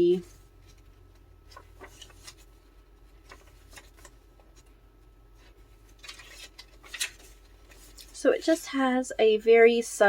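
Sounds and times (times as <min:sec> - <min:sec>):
paper pages rustling: 0:00.2 - 0:04.8, 0:05.4 - 0:08.2.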